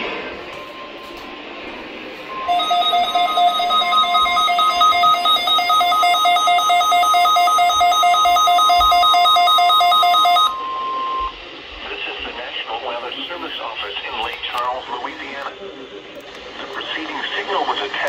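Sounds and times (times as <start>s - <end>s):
steady warning alarm tone: 0.3s - 11.4s
electronic alarm alternating two pitches: 2.3s - 11.3s.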